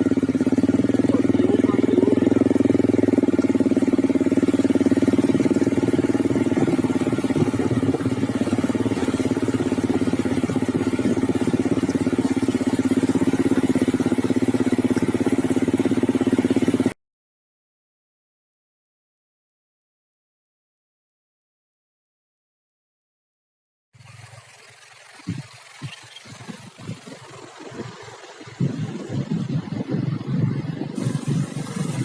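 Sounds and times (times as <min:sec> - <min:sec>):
small engine running: 0:00.0 - 0:17.0, 0:24.0 - 0:32.0.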